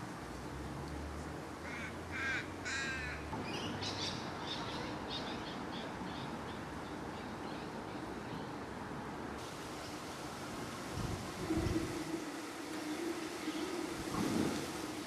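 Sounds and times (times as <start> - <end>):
crow cawing: 1.7 - 3.2.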